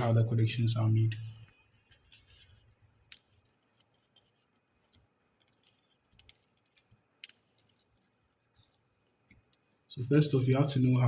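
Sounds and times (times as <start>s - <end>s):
small clicks of wires and components: 1.1s - 9.8s.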